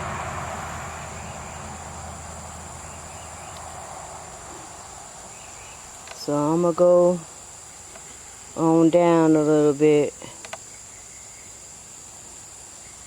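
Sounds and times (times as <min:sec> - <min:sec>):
passing vehicle rush: 0:00.0 - 0:06.2
insects droning: 0:00.0 - 0:13.0.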